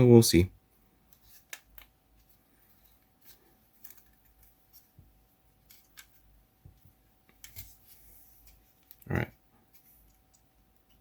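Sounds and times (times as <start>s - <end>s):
plastic parts clicking and rubbing: 1.0s - 9.1s.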